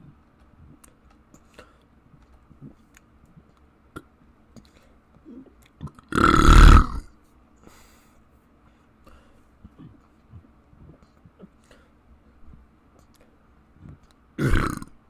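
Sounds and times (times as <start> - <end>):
person burping: 5.8 - 7.1, 14.4 - 15.0.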